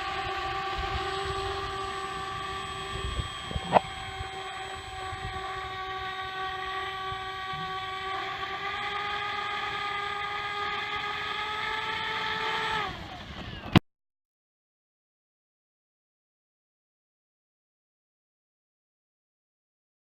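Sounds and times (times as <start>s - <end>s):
model plane electric motor whine: 0.0s - 13.8s.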